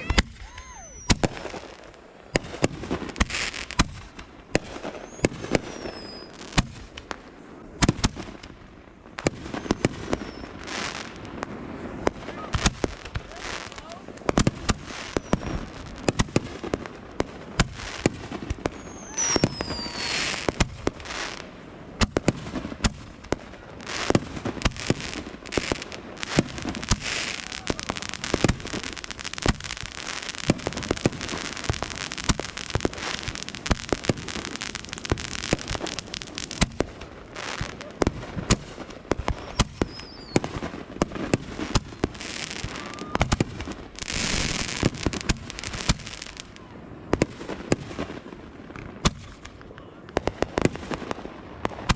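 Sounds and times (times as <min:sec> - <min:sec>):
falling firework whistles: 0:00.0 - 0:01.7, 0:02.3 - 0:07.0, 0:09.2 - 0:11.1, 0:11.8 - 0:16.3, 0:17.5 - 0:21.4, 0:24.0 - 0:40.6, 0:41.3 - 0:46.5
fireworks bangs and pops: 0:00.0 - 0:51.9
fireworks crackling: 0:00.0 - 0:51.9.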